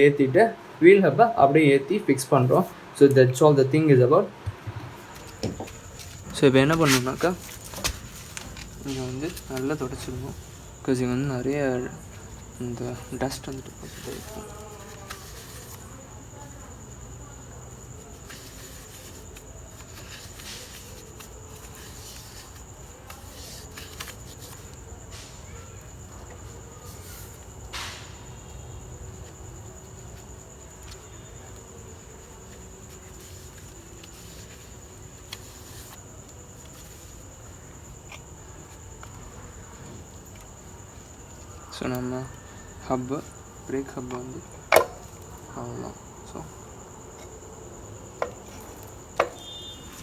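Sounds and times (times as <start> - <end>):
small knocks: 4.4 - 10.2, 44.0 - 45.2, 48.1 - 50.0.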